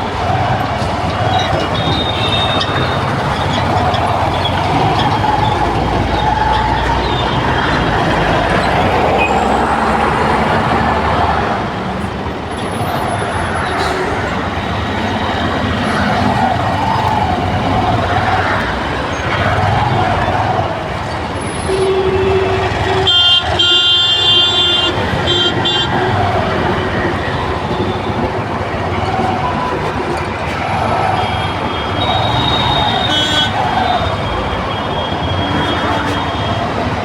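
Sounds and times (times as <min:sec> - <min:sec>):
heavy road traffic rumble: 0:00.0 - 0:37.0.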